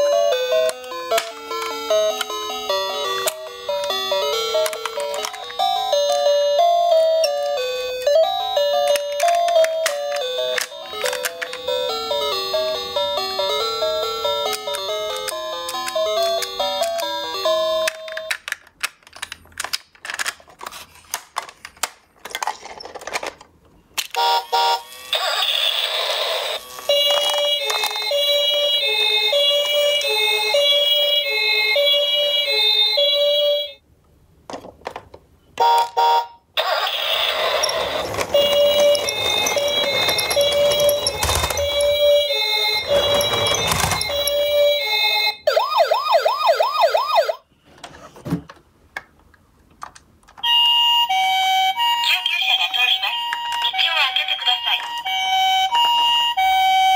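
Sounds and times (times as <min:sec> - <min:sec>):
plastic clicks and clatters: 0:08.8 - 0:11.6, 0:17.8 - 0:24.2, 0:47.8 - 0:50.5
toy two-tone siren: 0:24.1 - 0:33.8, 0:35.6 - 0:47.4, 0:50.4 - 0:56.9.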